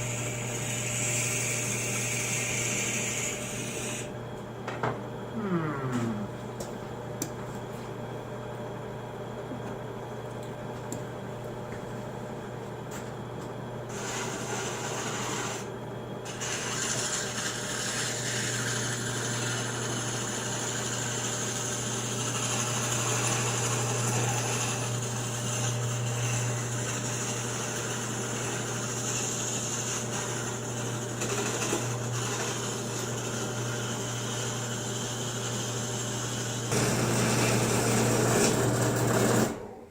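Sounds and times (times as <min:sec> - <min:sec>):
file scraping on spinning metal: 0:00.0 - 0:04.1, 0:13.9 - 0:39.6
drill press motor hum: 0:13.9 - 0:39.9.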